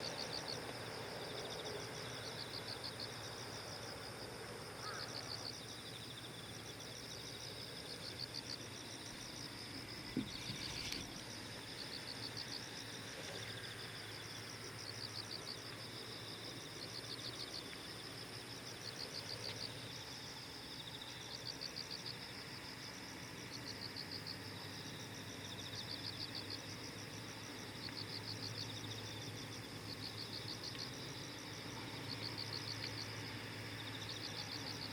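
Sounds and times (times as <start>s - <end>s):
insect chirping trills: 0.0s - 34.9s.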